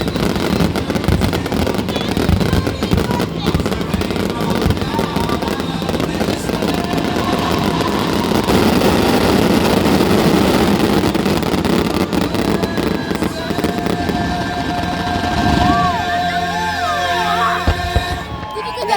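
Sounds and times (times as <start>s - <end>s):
fireworks crackling and popping: 0.0s - 18.9s.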